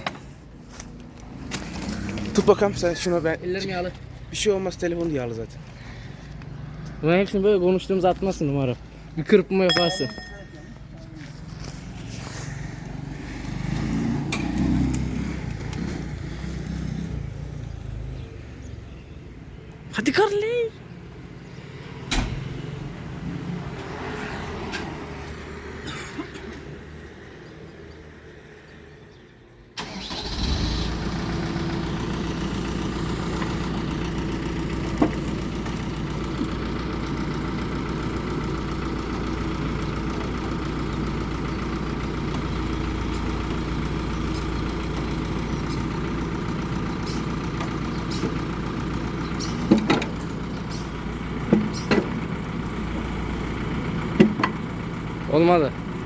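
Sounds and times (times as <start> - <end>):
backhoe diesel engine idling: 2.2 - 14.1, 29.8 - 56.0.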